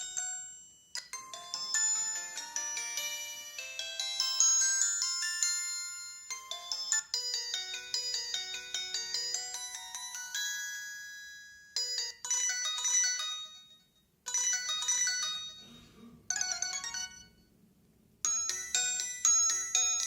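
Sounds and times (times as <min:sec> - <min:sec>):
phone ringtone melodies: 0:00.0 - 0:17.4, 0:18.3 - 0:20.0.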